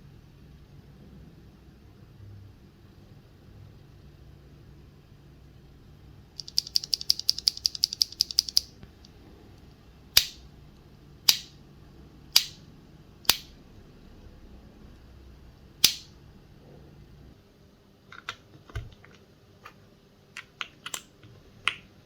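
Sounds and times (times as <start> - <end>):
mechanical keyboard typing: 6.4 - 8.7.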